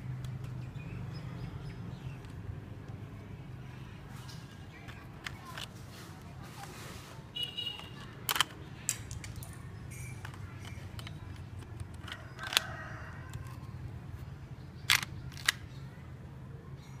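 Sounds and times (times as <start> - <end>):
sharp plastic clicks: 4.3 - 5.8, 7.6 - 13.7, 14.8 - 15.8.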